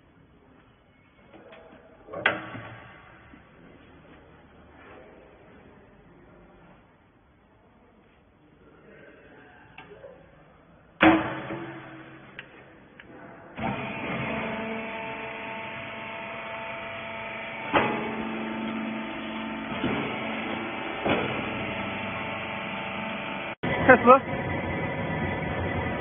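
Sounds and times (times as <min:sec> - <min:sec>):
loud metallic bang: 0:11.0 - 0:12.4
machine clanking: 0:13.6 - 0:23.5
baler motor humming: 0:13.6 - 0:26.0.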